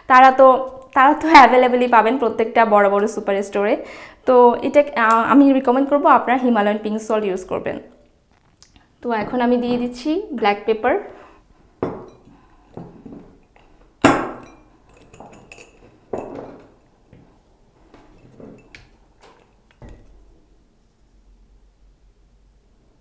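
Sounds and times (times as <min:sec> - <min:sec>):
kitchenware clinking: 0:05.0 - 0:05.5, 0:11.8 - 0:17.3, 0:18.0 - 0:20.3.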